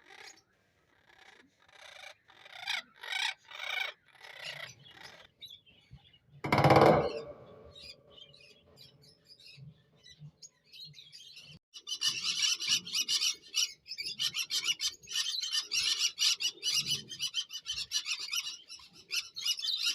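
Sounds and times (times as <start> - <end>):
parrots chattering: 1.0 - 5.3.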